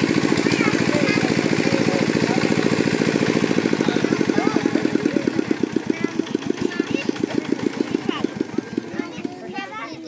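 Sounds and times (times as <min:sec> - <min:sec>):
small engine running: 0:00.0 - 0:10.0.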